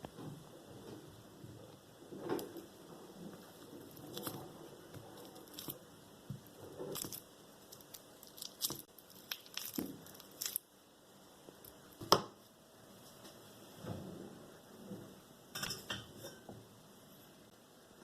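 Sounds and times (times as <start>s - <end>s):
food rustling and crinkling: 2.1s - 10.7s.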